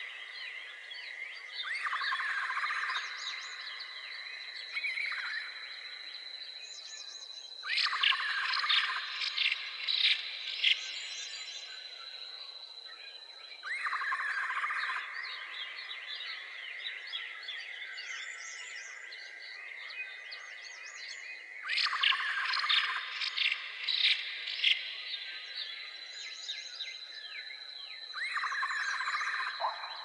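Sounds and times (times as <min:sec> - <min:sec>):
small birds chirping: 0:00.0 - 0:30.0
sharp bird calls: 0:28.1 - 0:30.0.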